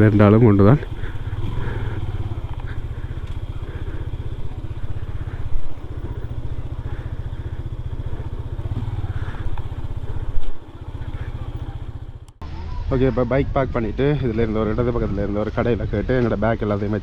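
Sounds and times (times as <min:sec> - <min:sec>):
motorcycle engine running: 0:00.0 - 0:12.6.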